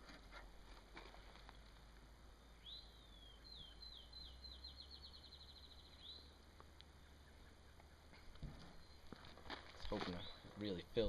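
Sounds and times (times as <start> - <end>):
bird singing a trill: 2.4 - 9.2, 10.0 - 10.8.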